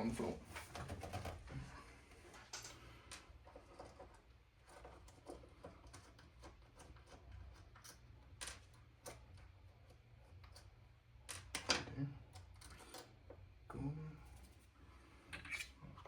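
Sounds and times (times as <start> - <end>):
small parts clicking and tapping: 2.4 - 13.5.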